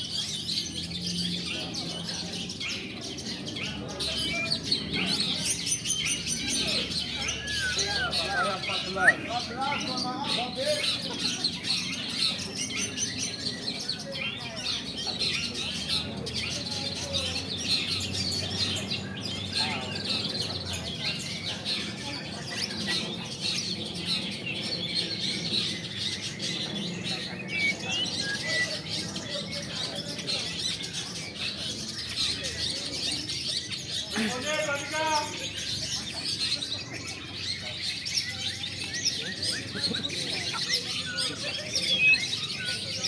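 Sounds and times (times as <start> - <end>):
chorus of birds chirping: 0.0 - 43.0.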